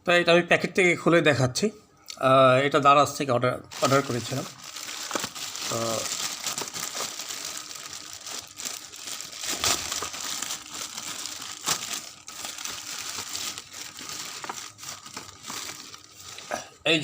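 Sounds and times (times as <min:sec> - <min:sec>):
packaging crinkling: 0:03.7 - 0:16.5.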